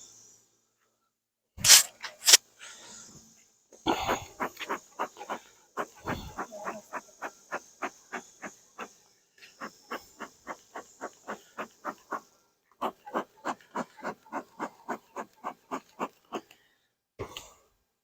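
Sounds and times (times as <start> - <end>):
brush swishing bees off frame: 1.6 - 2.4.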